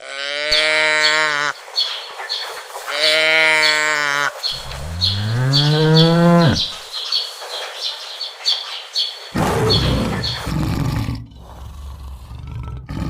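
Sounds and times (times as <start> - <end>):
high chirps: 0.6 - 10.5
cow mooing: 3.0 - 6.7.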